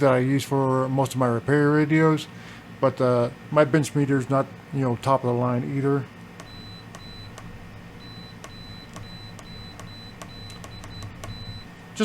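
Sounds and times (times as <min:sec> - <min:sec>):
probe tips clicking: 0:06.4 - 0:11.6
multimeter continuity beeps: 0:06.4 - 0:12.0.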